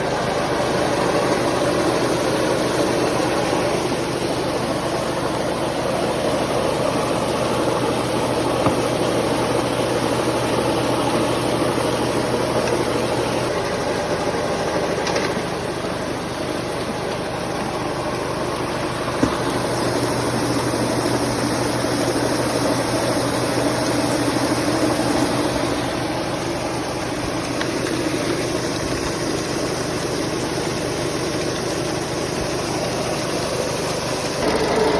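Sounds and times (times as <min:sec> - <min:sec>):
machine engine humming: 0:00.0 - 0:34.9.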